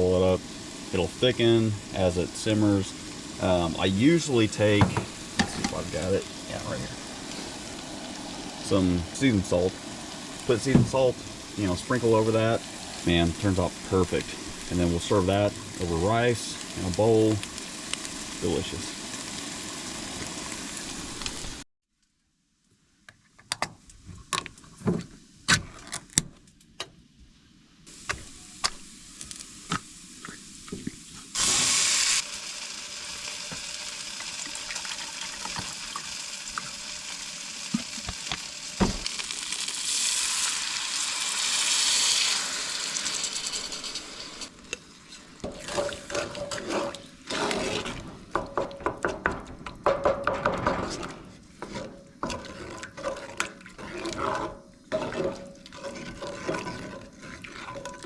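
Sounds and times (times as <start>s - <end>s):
liquid sizzling in a pan: 0.0s - 21.6s, 27.9s - 58.0s
spoon stirring a pan: 43.4s - 58.0s.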